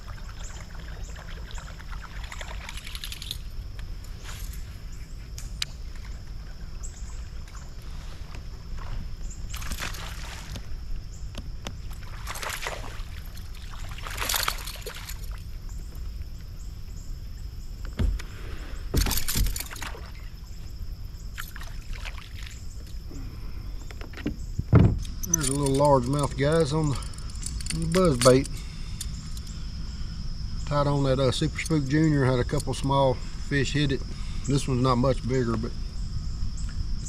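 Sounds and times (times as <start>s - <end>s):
water splashing around kayak: 0.0s - 3.2s, 5.9s - 15.6s, 18.0s - 22.8s
steady low rumble: 22.5s - 37.0s.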